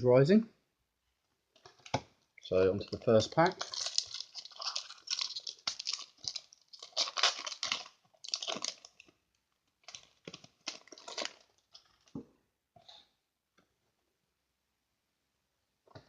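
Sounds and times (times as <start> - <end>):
foil wrapper crinkling and tearing: 3.1 - 9.2, 9.8 - 12.1.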